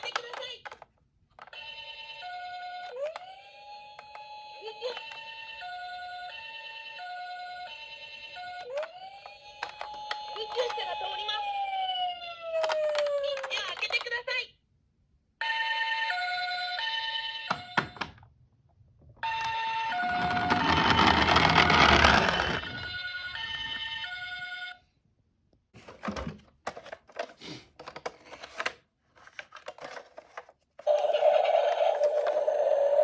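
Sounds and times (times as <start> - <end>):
two-tone ambulance siren: 5.5 - 13.3.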